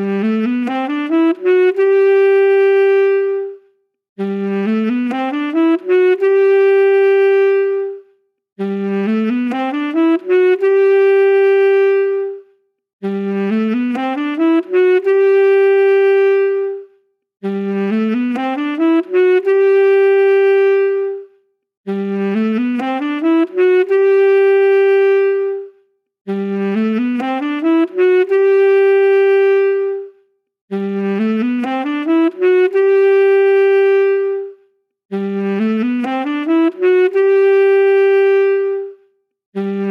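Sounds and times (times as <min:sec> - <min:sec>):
saxophone phrase: 0:00.0 - 0:03.6, 0:04.2 - 0:25.7, 0:26.3 - 0:39.0, 0:39.6 - 0:39.9.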